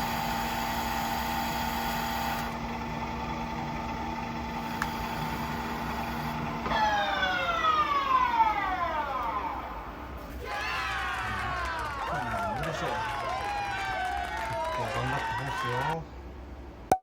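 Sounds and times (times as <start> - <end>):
spindle winding down: 0.0 - 9.8
lathe humming: 0.0 - 10.2
click: 4.8 - 5.0.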